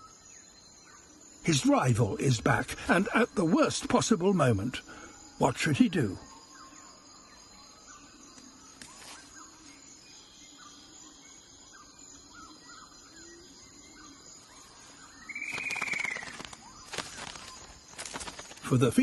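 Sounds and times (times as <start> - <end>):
faint bird chirps: 0.0 - 19.0
high insect tones: 0.0 - 19.0
loud rising and falling bird call: 15.3 - 16.6.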